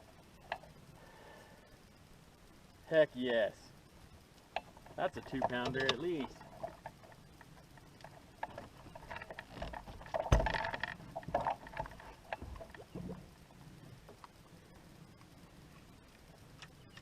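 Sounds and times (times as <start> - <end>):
knocks and bumps in a boat: 8.4 - 13.4.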